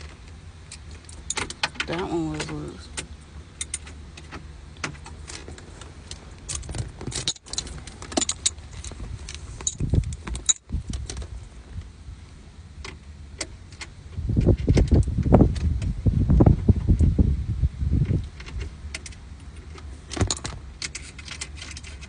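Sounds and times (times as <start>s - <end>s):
metallic clicks of tools and bolts: 0.7s - 5.4s, 6.5s - 11.2s
bumping and rustling: 3.9s - 11.9s, 19.6s - 22.0s.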